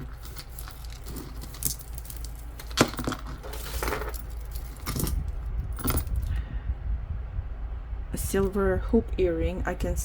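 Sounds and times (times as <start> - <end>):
metal jewelry clinking: 0.0 - 6.4.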